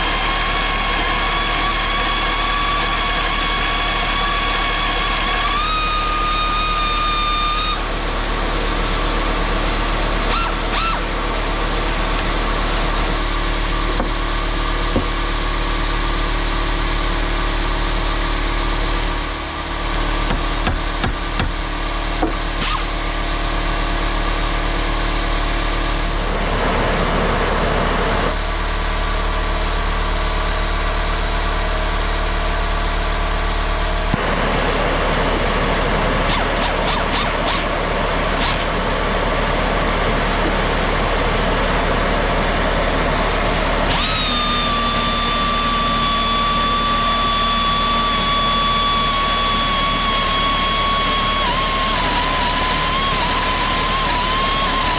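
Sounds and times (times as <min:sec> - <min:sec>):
pneumatic angle grinder running: 0:00.0 - 0:16.6, 0:19.0 - 0:23.6, 0:33.9 - 0:54.9.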